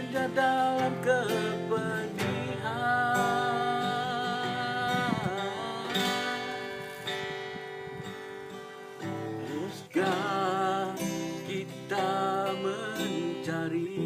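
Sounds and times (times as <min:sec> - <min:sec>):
person singing long notes: 0:00.0 - 0:07.1
acoustic guitar: 0:00.0 - 0:14.0.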